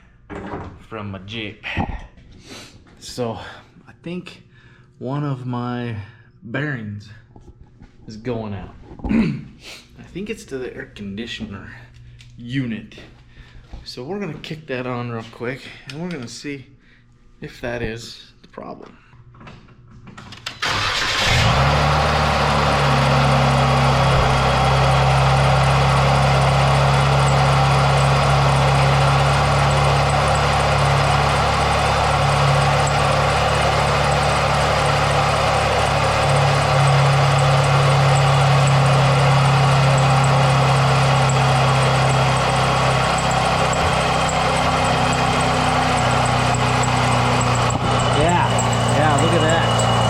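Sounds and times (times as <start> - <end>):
car engine starting and idling: 20.4 - 50.0
compressor pulley noise: 20.4 - 50.0.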